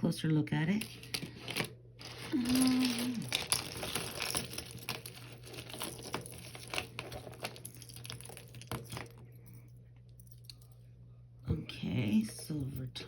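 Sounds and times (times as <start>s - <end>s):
plastic bag crinkling: 0.9s - 9.2s
jewelry beads clicking: 2.1s - 8.9s.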